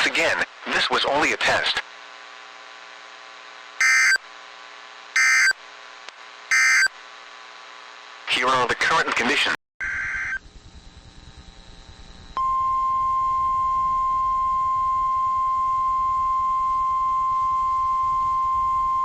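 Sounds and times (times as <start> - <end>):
steady warning alarm tone: 3.8 - 4.2, 5.2 - 5.6, 6.5 - 6.9
faint radio hiss: 8.3 - 9.6.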